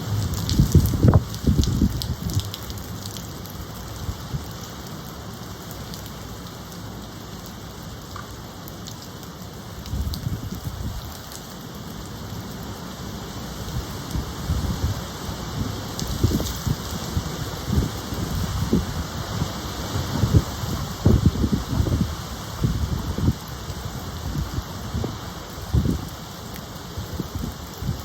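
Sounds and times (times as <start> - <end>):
low gusts of wind: 0.0 - 28.0
steady rain falling: 0.0 - 28.0.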